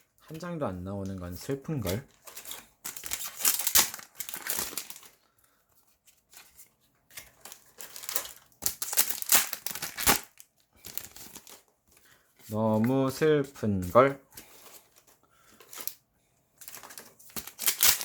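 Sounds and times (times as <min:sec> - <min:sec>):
foil wrappers crinkling and tearing: 0:01.7 - 0:05.3, 0:06.2 - 0:12.1, 0:14.6 - 0:16.0, 0:16.6 - 0:18.0.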